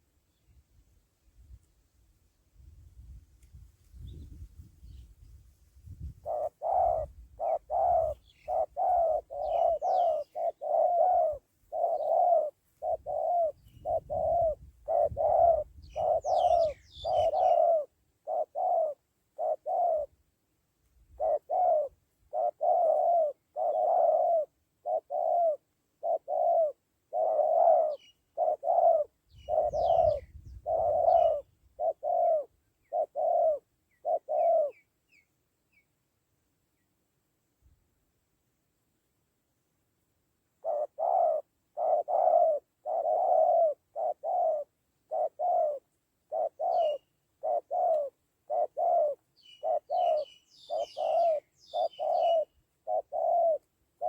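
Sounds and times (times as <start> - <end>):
small birds chirping: 4.0 - 20.1, 21.1 - 35.9, 40.6 - 53.8
dove cooing: 5.9 - 20.3, 21.0 - 34.9, 40.5 - 54.0.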